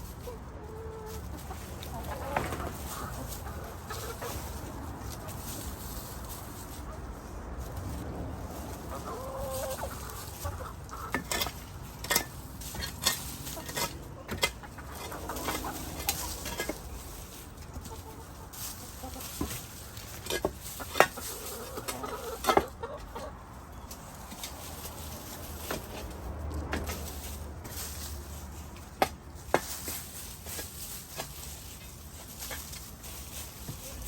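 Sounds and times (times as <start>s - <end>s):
hens clucking softly: 0.1s - 12.1s, 12.8s - 26.1s
sharp knocks and scrapes: 1.0s - 34.0s.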